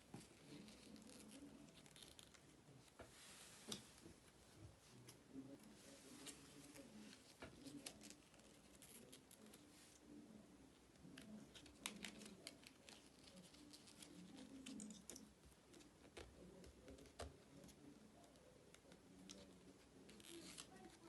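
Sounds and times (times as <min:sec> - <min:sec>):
faint room hum: 0:00.0 - 0:21.0.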